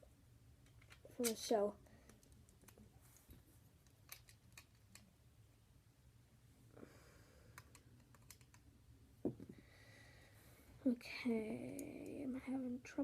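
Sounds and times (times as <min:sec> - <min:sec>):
plastic pieces clicking together: 0:03.8 - 0:05.1, 0:07.6 - 0:08.6.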